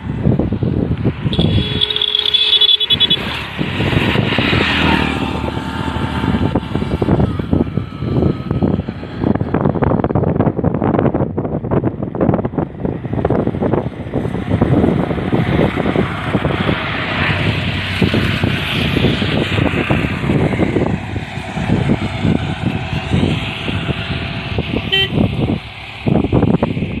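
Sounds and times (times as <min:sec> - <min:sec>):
traffic noise: 0:00.0 - 0:27.0
wind buffeting microphone: 0:00.0 - 0:27.0
high beeping toots: 0:01.3 - 0:03.4.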